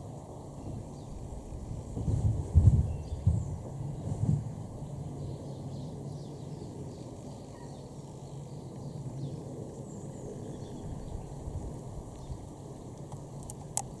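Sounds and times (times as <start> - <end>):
faint bird chirps: 4.8 - 11.4.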